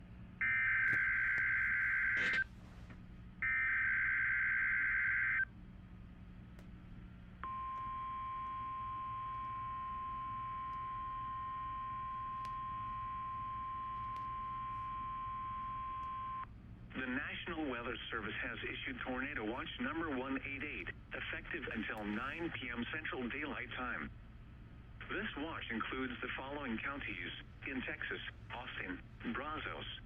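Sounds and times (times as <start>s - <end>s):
steady warning alarm tone: 0.4s - 2.5s, 3.4s - 5.5s, 7.4s - 16.5s.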